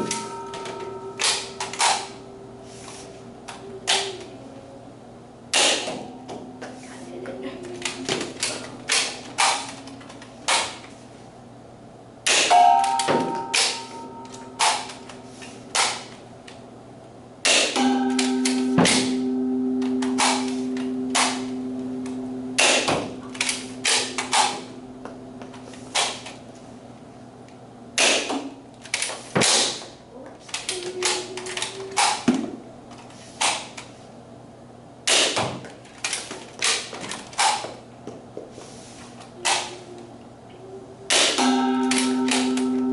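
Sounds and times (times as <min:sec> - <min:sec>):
steady low tone: 0:00.0 - 0:05.2, 0:12.6 - 0:15.3, 0:17.8 - 0:25.7, 0:39.9 - 0:42.9.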